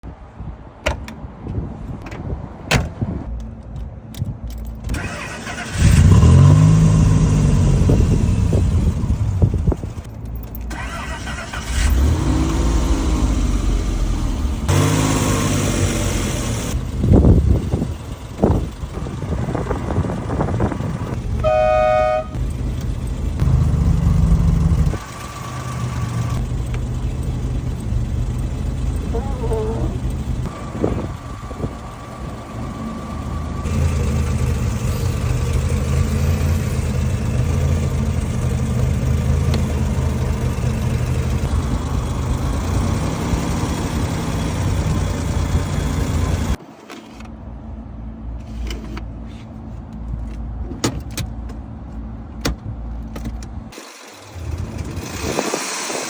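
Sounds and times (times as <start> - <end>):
car engine starting and revving: 4.9 - 10.1, 10.7 - 46.6, 53.7 - 56.0
car horn honking: 21.3 - 22.4.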